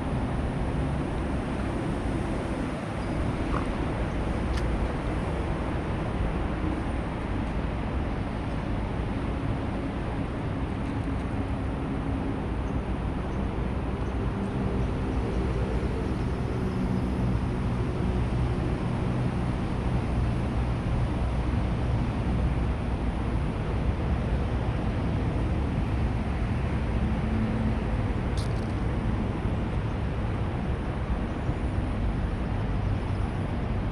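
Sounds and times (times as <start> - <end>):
road traffic rumble: 0.0 - 33.9
vehicle engine hum: 0.0 - 33.9.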